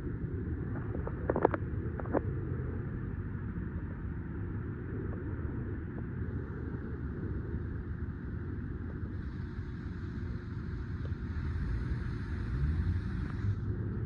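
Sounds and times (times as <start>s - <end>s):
vehicle engine rumbling: 6.0s - 14.0s.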